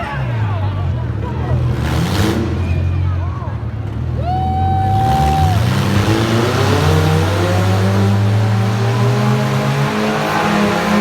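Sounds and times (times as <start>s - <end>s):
car engines revving hard: 0.0s - 4.2s, 4.8s - 11.0s
arena noise: 0.0s - 11.0s.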